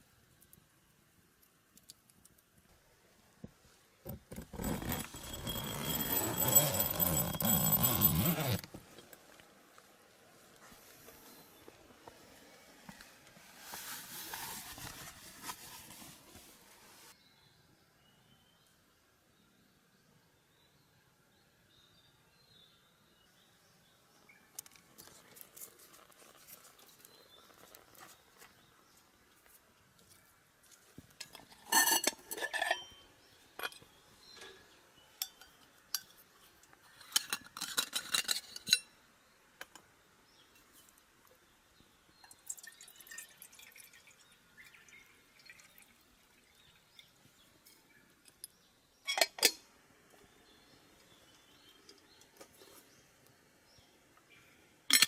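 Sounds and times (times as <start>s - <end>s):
dishes and glassware clinking: 31.2s - 33.0s.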